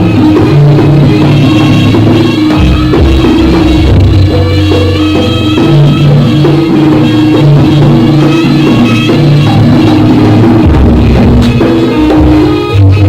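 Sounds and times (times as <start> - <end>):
live traditional music with drums: 0.0 - 13.0.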